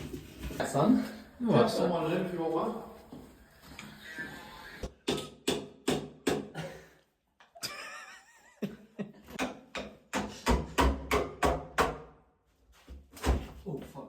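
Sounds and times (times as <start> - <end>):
hammer striking wall: 5.0 - 6.6, 9.4 - 12.1.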